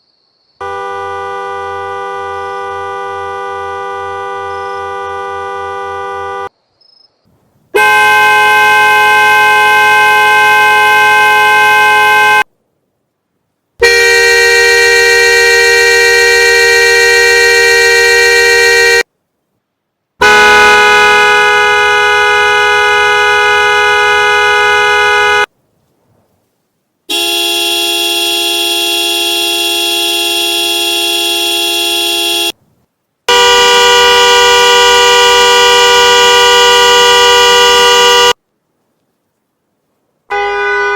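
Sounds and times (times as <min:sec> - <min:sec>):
car horn blasts: 0:00.6 - 0:06.5, 0:07.7 - 0:12.5, 0:13.8 - 0:19.1, 0:20.2 - 0:25.5, 0:27.1 - 0:32.6, 0:33.3 - 0:38.4, 0:40.3 - 0:40.9.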